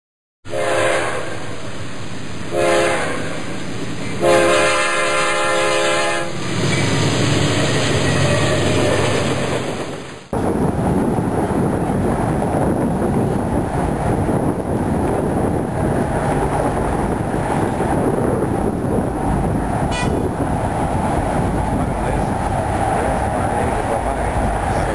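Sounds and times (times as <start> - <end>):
train air horn: 0.5 - 1.6, 2.5 - 3.5, 4.2 - 6.4, 19.9 - 20.3
train rumbling: 0.5 - 24.9.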